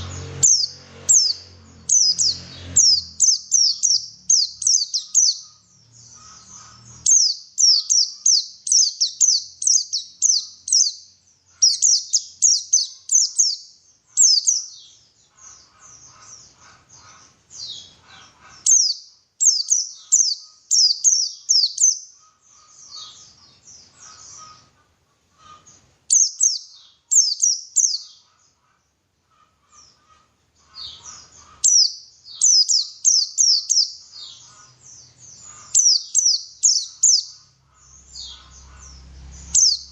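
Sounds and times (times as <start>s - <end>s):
bird singing high chirps: 0.0s - 24.8s, 25.4s - 28.6s, 29.6s - 39.9s.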